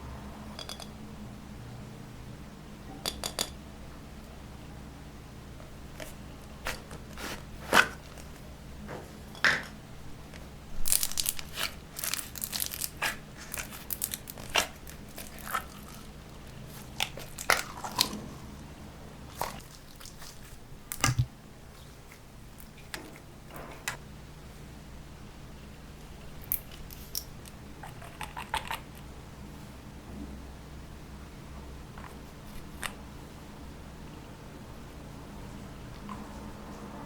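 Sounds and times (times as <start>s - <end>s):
slime clicking and crackling: 10.8s - 18.1s.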